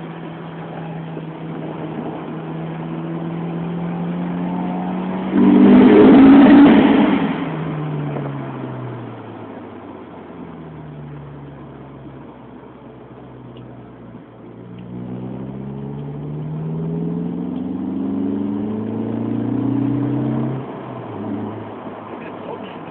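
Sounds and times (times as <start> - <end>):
car engine revving: 0.0 - 22.9.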